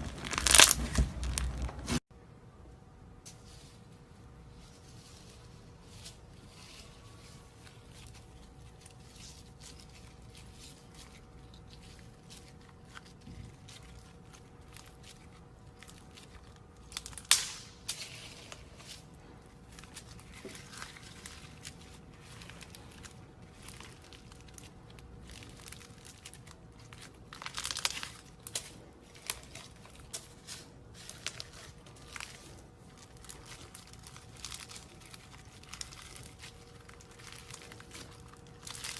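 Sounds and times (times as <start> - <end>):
slime crackling and crunching: 0.0 - 2.0, 6.4 - 38.9
faint steady hum: 0.0 - 38.9.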